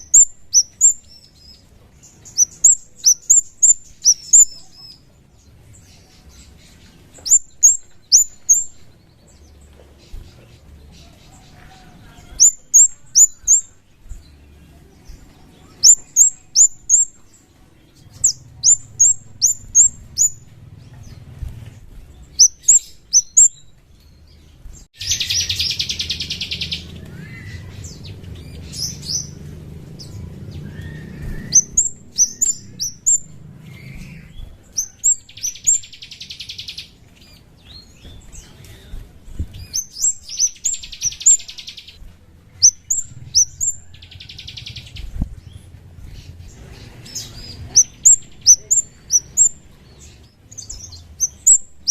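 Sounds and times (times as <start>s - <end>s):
bird song high sharp notes: 0.0s - 21.2s, 22.1s - 38.5s
low rumble: 0.0s - 36.2s, 36.8s - 51.9s.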